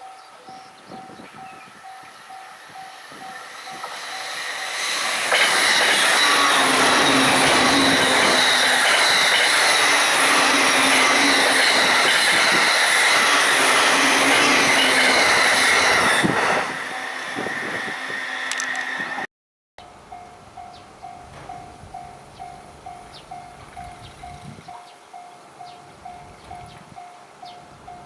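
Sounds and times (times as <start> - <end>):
level-crossing bell ringing: 0.0 - 17.3, 19.8 - 28.0
train wheels rushing on rails: 0.5 - 19.3.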